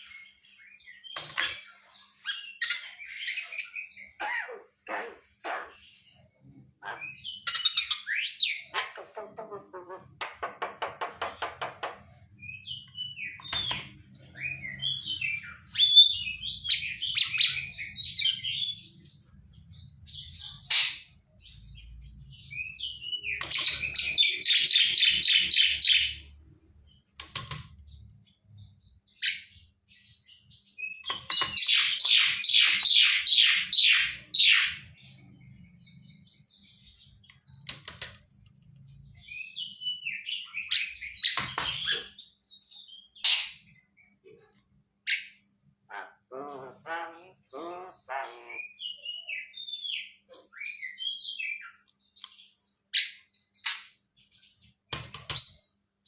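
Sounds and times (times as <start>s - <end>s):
rapid harsh repeated bird notes: 23.1s - 26.3s, 31.0s - 34.9s.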